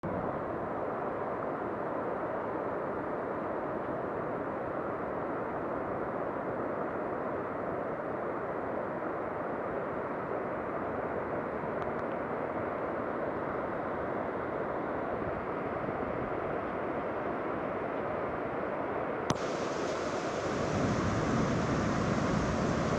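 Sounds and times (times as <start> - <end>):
surf breaking on a beach: 19.3 - 22.9.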